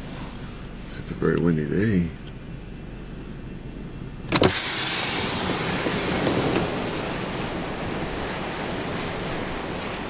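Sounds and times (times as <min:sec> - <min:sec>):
strong wind: 0:02.1 - 0:10.0
storm waves breaking: 0:04.4 - 0:10.0.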